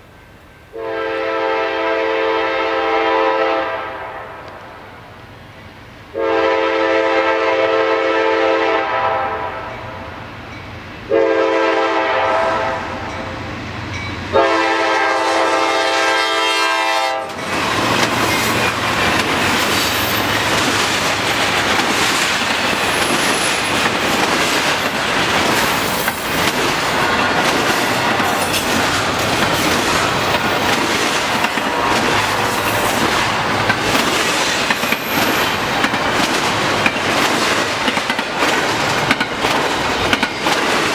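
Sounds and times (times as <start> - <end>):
locomotive horn blasts: 0.7 - 4.7, 6.1 - 10.0, 11.1 - 13.3, 14.3 - 17.4
train wheels rumbling and clattering: 8.9 - 40.9.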